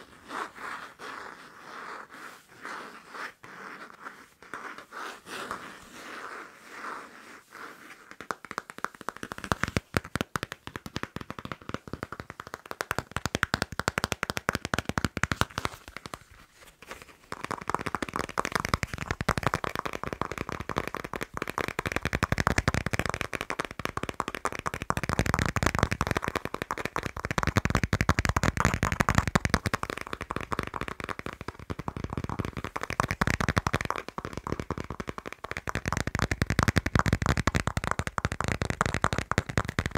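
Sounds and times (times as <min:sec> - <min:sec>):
scratching on a passport: 0:00.1 - 0:10.0
tapping on a passport: 0:08.1 - 0:39.9.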